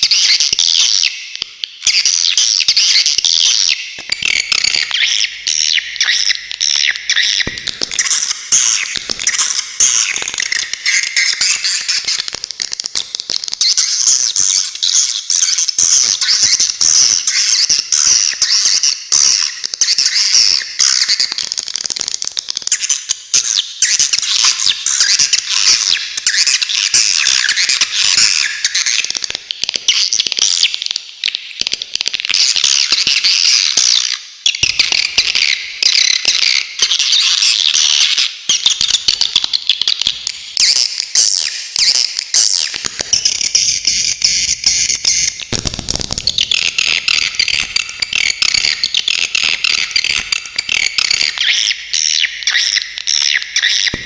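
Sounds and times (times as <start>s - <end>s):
swiftlets twittering: 42.4s - 51.7s.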